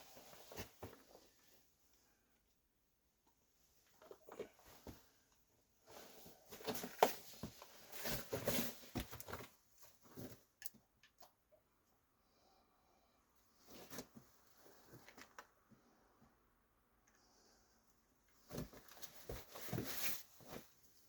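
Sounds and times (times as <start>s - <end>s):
scuffing and rustling: 18.4s - 20.9s.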